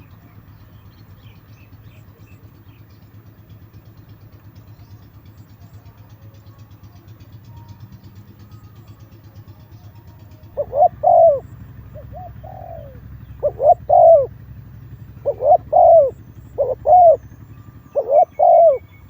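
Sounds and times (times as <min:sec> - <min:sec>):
faint bird chirps: 0:04.6 - 0:19.0
steady low rumble: 0:09.1 - 0:19.0.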